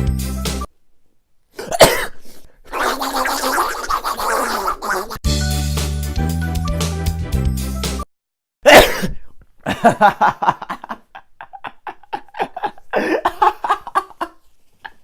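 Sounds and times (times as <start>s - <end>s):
person sneezing: 1.6s - 5.2s, 8.7s - 9.3s
background music: 5.3s - 8.0s
choppy laughter: 9.7s - 15.0s.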